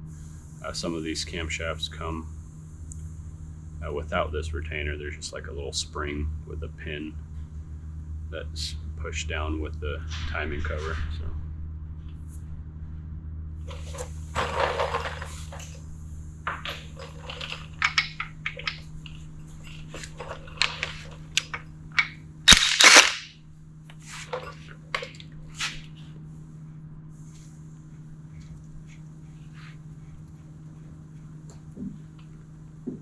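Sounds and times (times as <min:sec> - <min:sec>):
steady low hum: 0:00.0 - 0:33.0
metal tools clinking: 0:16.5 - 0:23.2
metal clattering burst: 0:20.0 - 0:23.3.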